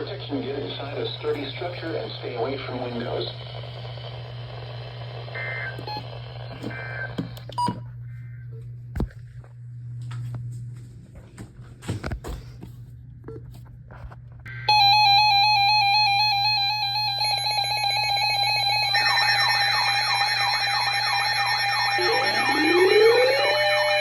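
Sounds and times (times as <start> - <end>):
low hum: 0.0 - 11.2, 12.8 - 24.0
warbling siren-like sweeps: 17.4 - 24.0
electronic alert tone: 18.6 - 24.0
rising electronic glide: 19.7 - 24.0.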